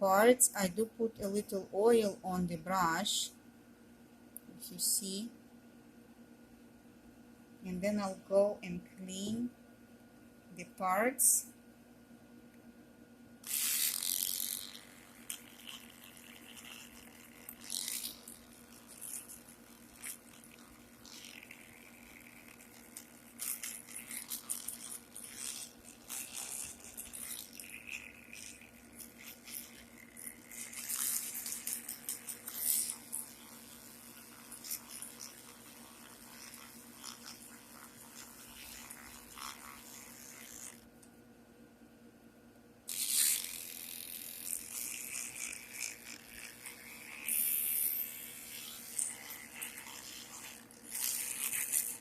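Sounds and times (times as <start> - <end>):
toothbrush scrubbing metal: 13.4 - 40.8, 42.9 - 52.0.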